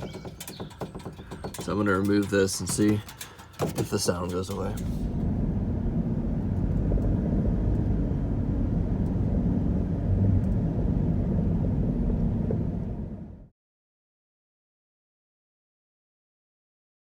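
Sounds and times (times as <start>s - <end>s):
car road and engine rumble: 0.0s - 13.5s.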